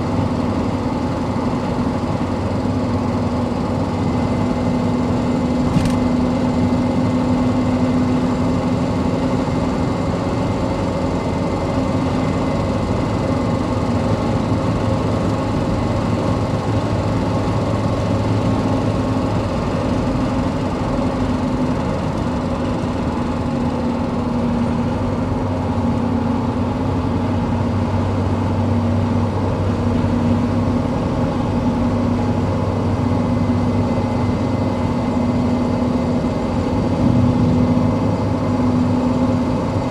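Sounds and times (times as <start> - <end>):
diesel engine running: 0.0 - 39.9
tyre road noise hum: 0.0 - 39.9.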